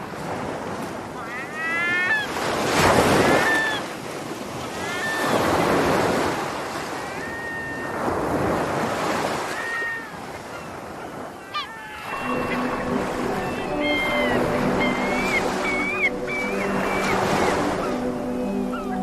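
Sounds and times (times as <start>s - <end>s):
sea waves breaking: 0.0s - 19.0s
gulls calling: 1.2s - 3.9s, 4.7s - 5.8s, 9.2s - 19.0s.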